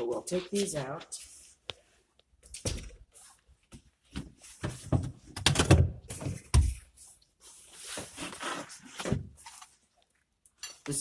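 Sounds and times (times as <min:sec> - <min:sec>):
rustling scrape: 0:07.4 - 0:09.8.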